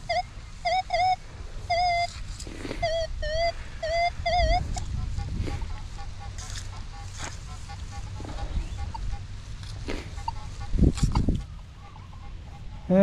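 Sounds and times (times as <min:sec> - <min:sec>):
metal detector beeps: 0:00.0 - 0:02.2, 0:02.8 - 0:04.9.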